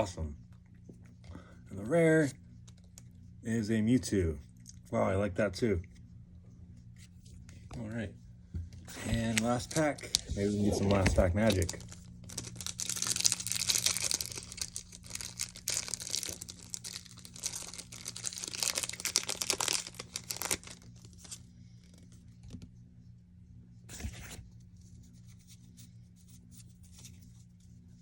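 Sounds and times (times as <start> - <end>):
cards rustling: 8.9 - 22.0
foil wrapper tearing and crinkling: 9.1 - 21.4.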